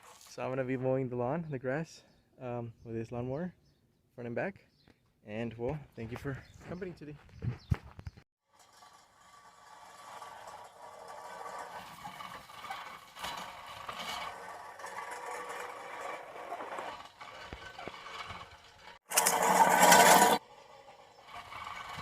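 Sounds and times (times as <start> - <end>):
push reel mower rattling whir: 8.4 - 22.0.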